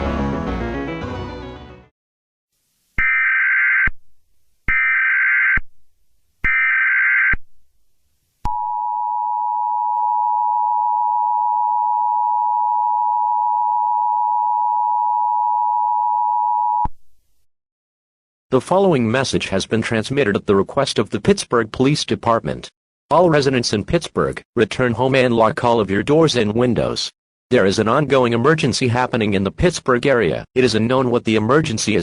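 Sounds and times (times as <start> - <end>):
background music: 0.0 - 1.9.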